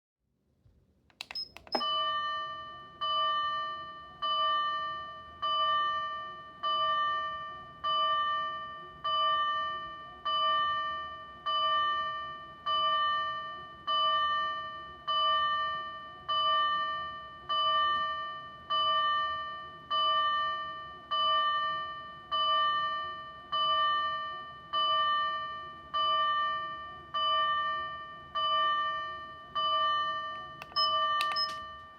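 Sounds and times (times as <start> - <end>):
switch click: 1.1 - 1.9, 30.6 - 31.6
electronic fire bell tone: 1.2 - 31.9.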